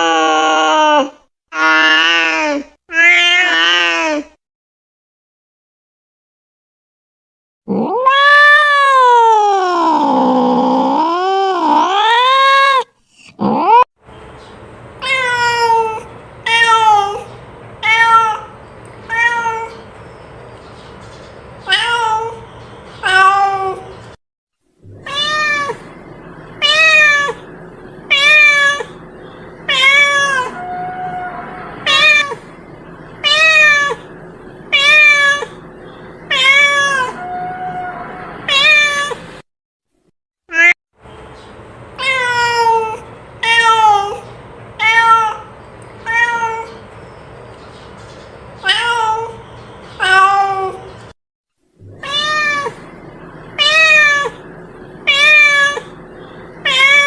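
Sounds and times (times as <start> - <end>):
cat meowing: 0.0 - 4.3, 7.7 - 13.8, 15.0 - 19.8, 21.6 - 22.4, 23.0 - 23.9, 24.9 - 25.9, 26.6 - 27.4, 28.1 - 29.0, 29.7 - 32.5, 33.2 - 34.1, 34.7 - 35.6, 36.3 - 39.2, 40.5 - 40.8, 42.0 - 46.8, 48.6 - 49.4, 50.0 - 50.9, 51.9 - 53.0, 53.6 - 56.0, 56.6 - 57.0.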